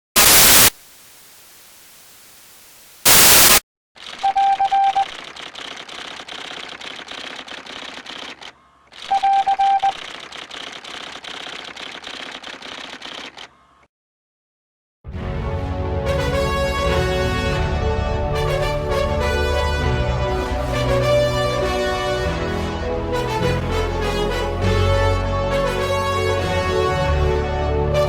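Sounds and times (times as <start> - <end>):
loud static hiss: 0.0 - 3.6
fast clicking clatter: 4.0 - 13.5
quick beeping tone: 9.1 - 10.0.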